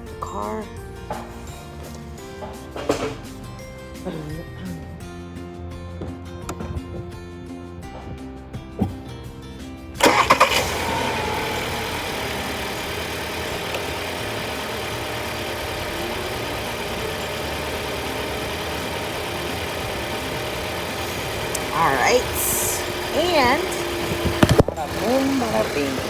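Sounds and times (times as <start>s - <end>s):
car engine cranking and idling: 0.8s - 26.0s.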